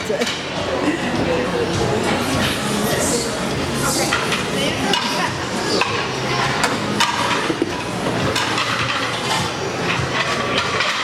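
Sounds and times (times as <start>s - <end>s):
restaurant music: 0.0s - 11.0s
background voices: 0.2s - 10.5s
dishes clinking: 3.8s - 11.0s.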